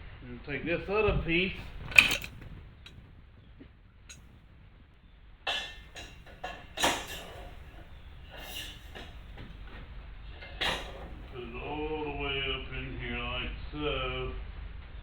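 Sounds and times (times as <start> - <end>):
steel crane parts clanking: 0.8 - 3.0, 5.5 - 12.0.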